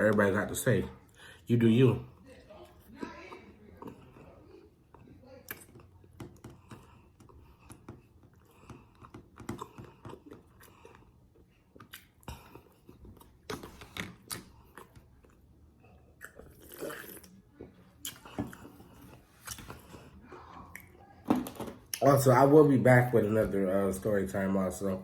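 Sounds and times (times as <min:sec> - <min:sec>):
person chewing crunchy food: 0:02.7 - 0:20.9.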